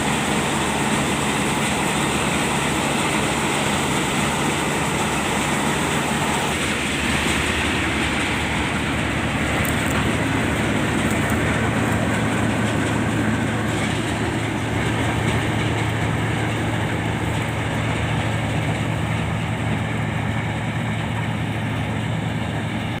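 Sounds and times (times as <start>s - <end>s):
farm machinery engine hum: 0.0s - 23.0s.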